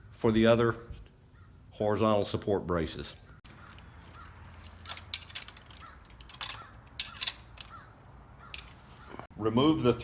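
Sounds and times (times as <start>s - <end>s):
hand tools clicking on bolts: 3.5s - 9.3s.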